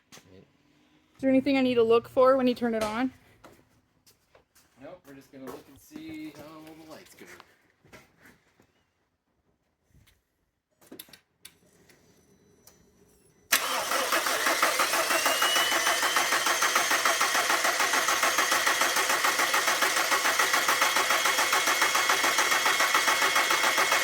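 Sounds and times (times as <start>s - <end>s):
car starter cranking engine: 13.5s - 24.0s.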